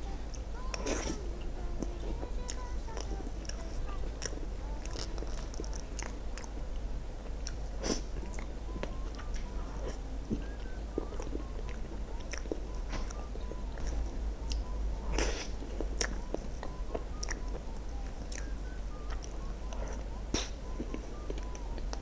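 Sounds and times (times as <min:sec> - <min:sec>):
mouth clicks: 0:09.1 - 0:22.0
biting and chewing: 0:09.2 - 0:17.6.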